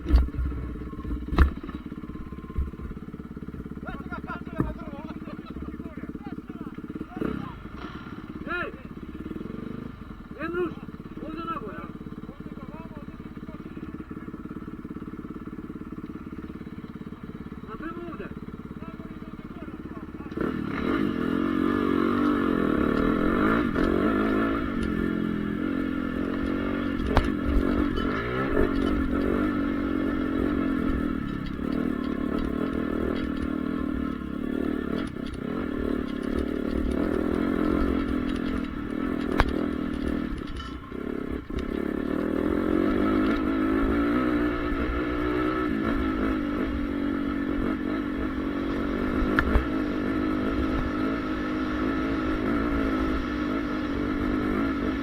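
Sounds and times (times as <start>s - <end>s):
sharp engine knocks: 0.0s - 5.4s, 6.4s - 9.1s, 19.9s - 44.0s, 49.2s - 49.8s
motocross bike engine revving: 0.0s - 55.0s.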